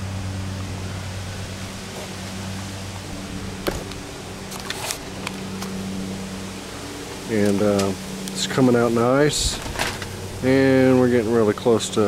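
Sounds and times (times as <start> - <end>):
background hiss: 0.0 - 12.0
low mechanical hum: 0.0 - 12.0.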